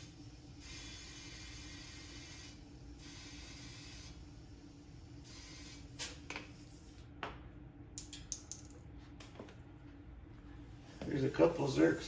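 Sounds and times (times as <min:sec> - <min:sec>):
compressed air hissing into tire: 0:00.0 - 0:06.3.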